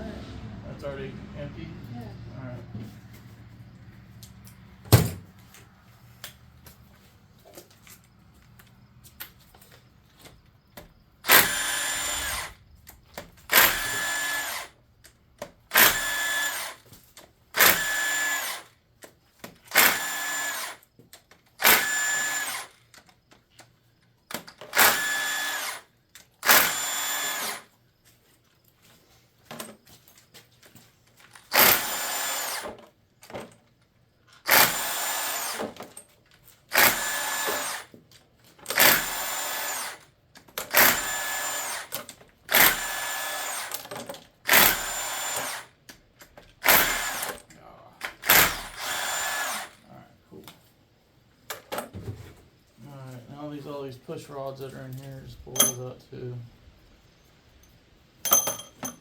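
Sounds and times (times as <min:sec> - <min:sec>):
power drill whining: 0:11.2 - 0:12.6, 0:13.5 - 0:14.8, 0:15.7 - 0:16.9, 0:17.6 - 0:18.8, 0:19.7 - 0:20.9, 0:21.6 - 0:22.9, 0:24.5 - 0:27.8, 0:31.4 - 0:32.8, 0:34.5 - 0:36.0, 0:36.7 - 0:38.0, 0:38.7 - 0:45.8, 0:46.6 - 0:47.4, 0:48.0 - 0:49.9.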